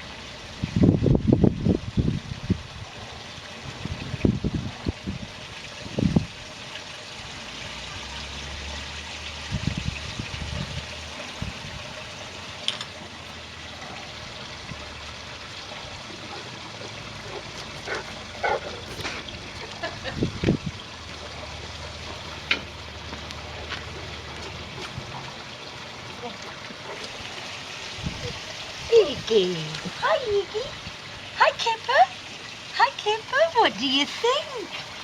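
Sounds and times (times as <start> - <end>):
wind blowing: 0.2 - 6.6, 9.4 - 13.4, 14.1 - 32.6
wind gusts buffeting microphone: 0.5 - 6.5, 9.5 - 12.0, 19.3 - 20.9, 27.9 - 31.0.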